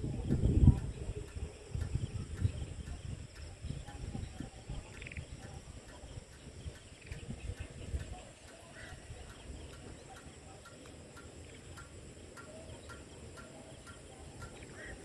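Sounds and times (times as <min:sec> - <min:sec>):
high insect drone: 0:00.0 - 0:15.0.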